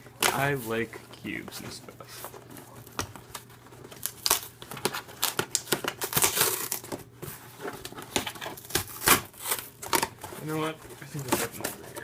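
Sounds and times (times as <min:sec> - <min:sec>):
packaging crinkling: 0:02.2 - 0:12.0.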